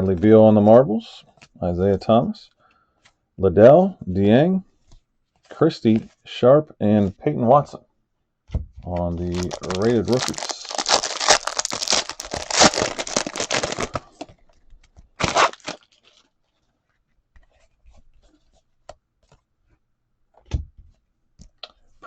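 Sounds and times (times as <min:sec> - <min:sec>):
wrapper tearing with crinkling: 0:09.2 - 0:14.3, 0:15.2 - 0:16.3.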